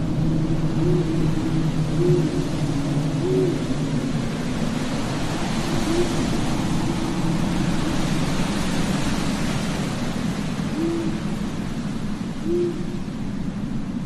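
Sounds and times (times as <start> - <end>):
steady rushing noise: 0.0 - 14.0
owl hooting: 0.7 - 3.7, 5.8 - 6.4, 10.7 - 11.2, 12.4 - 13.0.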